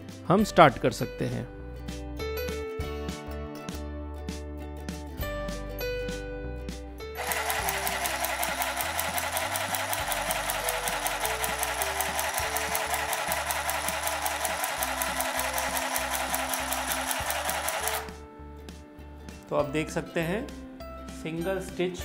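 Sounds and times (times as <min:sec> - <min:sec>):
sewing machine needle clattering: 0:07.2 - 0:18.2.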